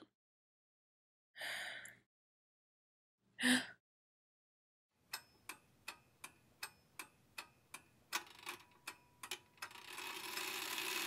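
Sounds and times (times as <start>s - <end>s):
clock ticking: 5.1s - 11.0s.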